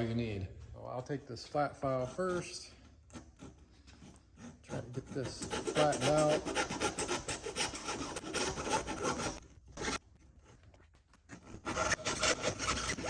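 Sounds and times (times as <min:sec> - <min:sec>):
file rasping on metal edge: 0:01.8 - 0:10.0, 0:11.3 - 0:13.0.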